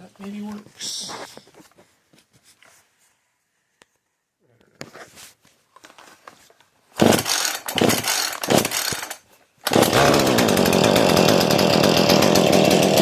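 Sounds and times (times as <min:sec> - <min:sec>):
chainsaw pull-starting and running: 0:07.0 - 0:13.0.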